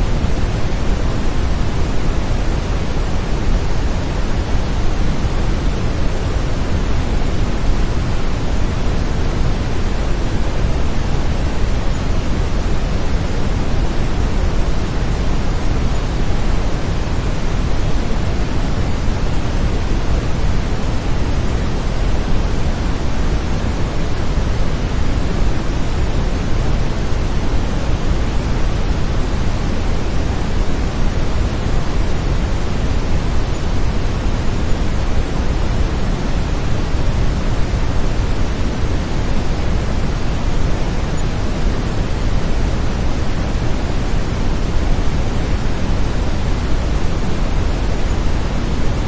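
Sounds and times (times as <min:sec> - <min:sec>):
brown noise hiss: 0:00.0 - 0:49.0.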